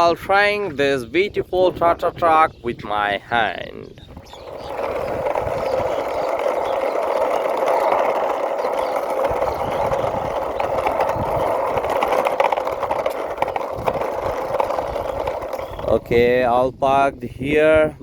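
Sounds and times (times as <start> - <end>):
toy truck wheels whirring: 4.1 - 16.1.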